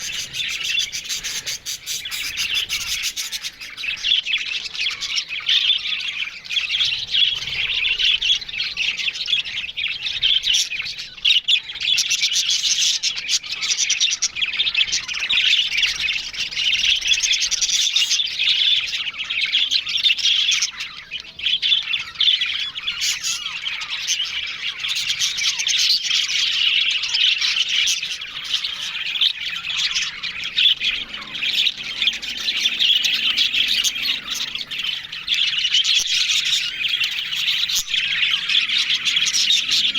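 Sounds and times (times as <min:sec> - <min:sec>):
sharp squawk: 0:00.0 - 0:06.1, 0:22.8 - 0:39.9
budgerigars chattering and chirping: 0:00.0 - 0:39.9.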